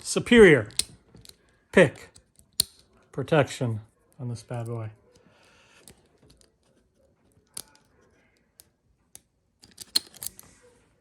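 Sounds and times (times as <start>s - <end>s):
lock-picking tools clicking: 0.6s - 3.0s, 8.6s - 10.4s.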